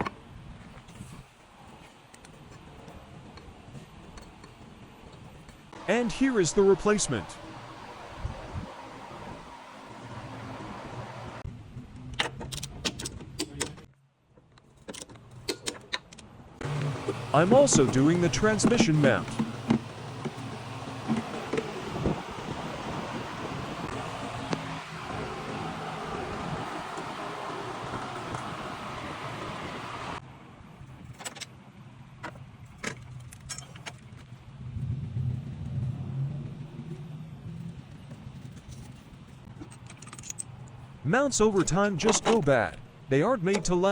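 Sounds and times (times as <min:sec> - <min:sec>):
low steady hum: 0:02.2 - 0:12.2, 0:16.4 - 0:43.8
steady rushing noise: 0:05.8 - 0:11.4, 0:16.6 - 0:30.2
low rumble: 0:34.4 - 0:38.5.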